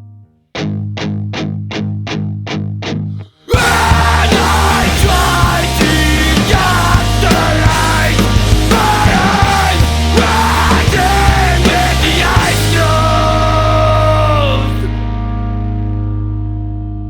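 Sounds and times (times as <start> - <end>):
fast punk hardcore music: 3.5 - 15.1.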